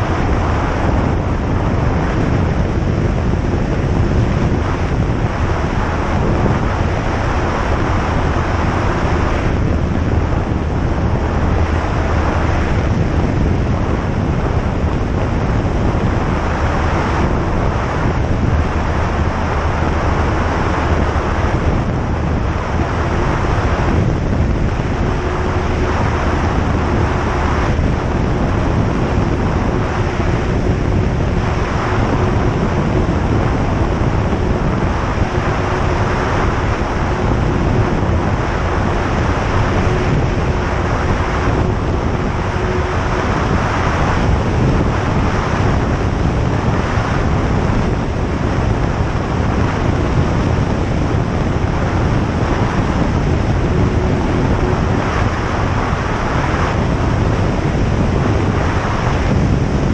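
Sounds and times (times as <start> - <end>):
aircraft engine drone: 0.0 - 59.9
rushing air noise: 0.0 - 59.9.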